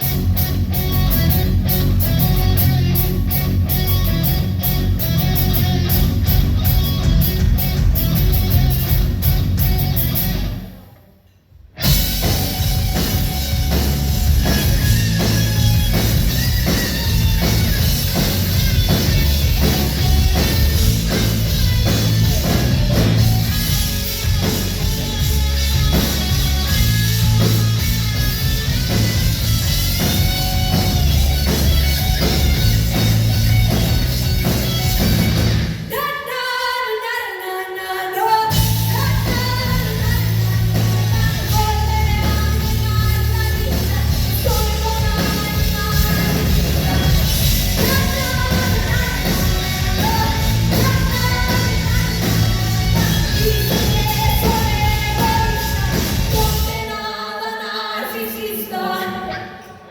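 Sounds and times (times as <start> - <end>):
live heavy rock band: 0.0 - 10.8, 11.7 - 36.0, 38.4 - 57.1
person singing lead vocal: 35.9 - 59.9.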